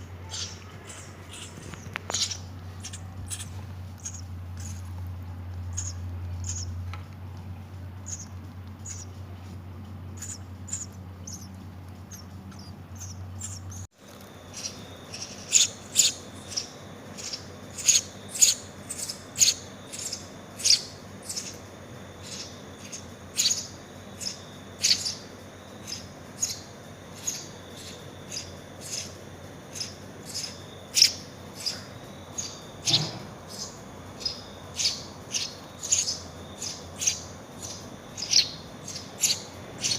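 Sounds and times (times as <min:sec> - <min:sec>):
bird chicks chirping: 0:00.0 - 0:39.9
low steady hum: 0:00.0 - 0:39.9.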